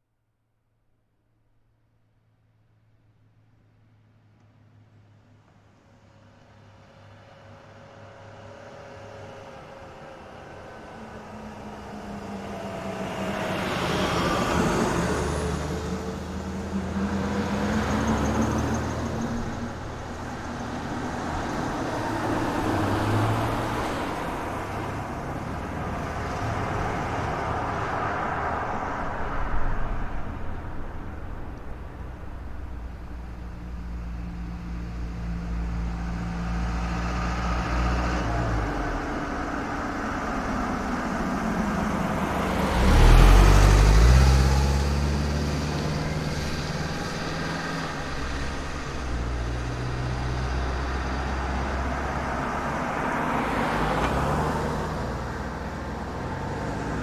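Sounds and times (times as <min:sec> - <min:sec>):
vehicles passing: 0:06.6 - 0:57.0
car driving by: 0:09.3 - 0:57.0.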